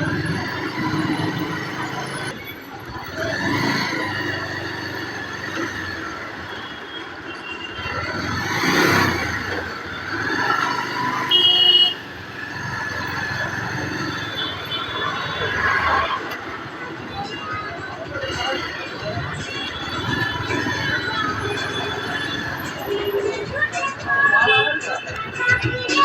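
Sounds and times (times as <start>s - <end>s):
road traffic engines and tyres: 0.0s - 26.0s
vehicle passing close: 8.0s - 11.3s
vehicle horn toot: 10.1s - 12.3s.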